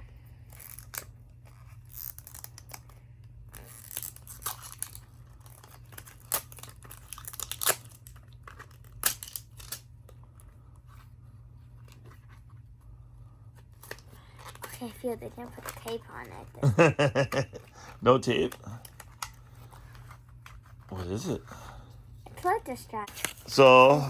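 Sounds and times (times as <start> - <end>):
wrapping paper tearing and crinkling: 0.5 - 1.1, 1.7 - 2.9, 3.5 - 9.9, 13.7 - 21.4, 22.3 - 24.0.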